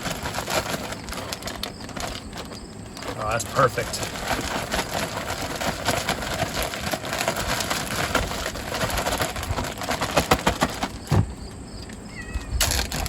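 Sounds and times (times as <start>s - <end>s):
plastic bag crinkling: 0.0s - 13.0s
dull thump: 10.2s - 11.5s.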